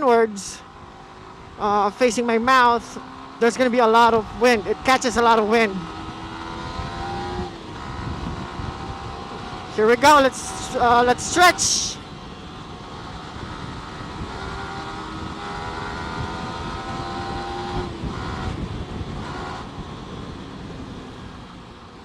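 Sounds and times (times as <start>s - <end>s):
motorcycle engine accelerating: 0.0s - 22.0s
wind rush on microphone: 4.1s - 21.7s.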